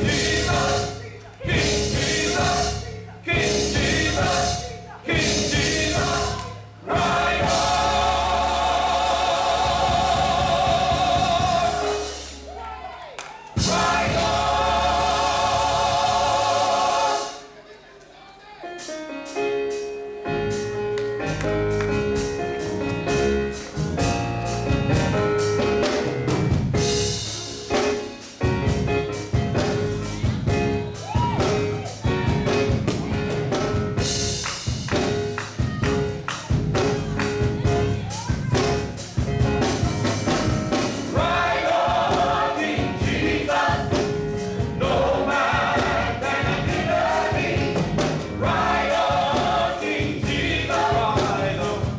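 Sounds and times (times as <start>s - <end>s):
choir singing: 0.0s - 18.5s, 40.1s - 51.9s
band playing gospel music: 0.0s - 51.9s.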